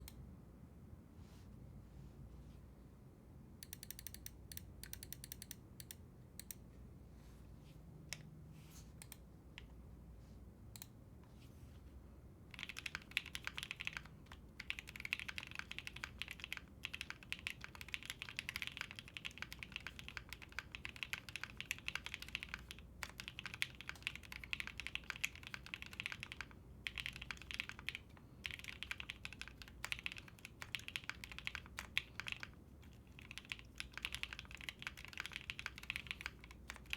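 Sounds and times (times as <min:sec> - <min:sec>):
mechanical keyboard typing: 0:03.6 - 0:06.6, 0:12.5 - 0:36.9.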